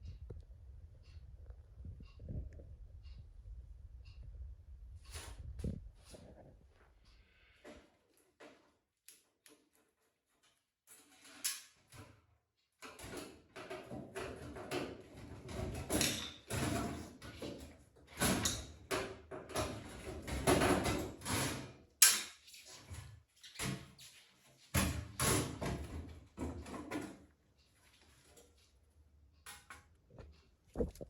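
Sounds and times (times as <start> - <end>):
objects knocking and clattering: 12.8 - 22.2, 24.8 - 27.3.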